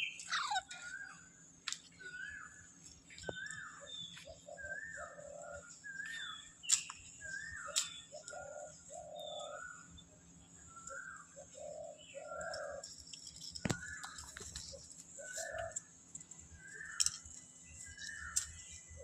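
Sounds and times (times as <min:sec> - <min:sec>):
parakeet calling: 0:00.0 - 0:01.2.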